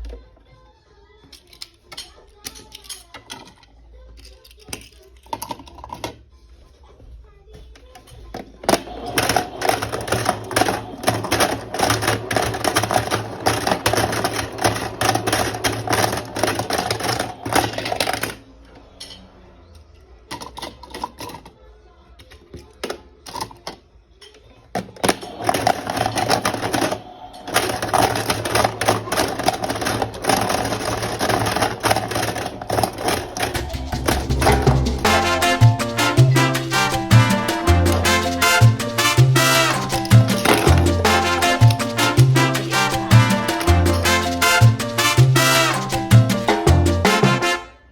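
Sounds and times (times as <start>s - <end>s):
toy cars rattling in drum: 1.3s - 6.3s, 7.7s - 47.6s
toy washing machine motor humming: 8.6s - 18.5s, 25.1s - 47.1s.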